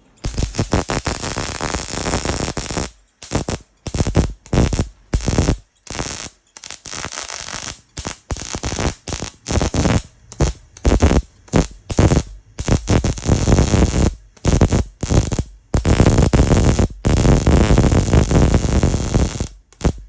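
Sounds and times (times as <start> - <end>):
welder crackling: 0.0 - 20.0.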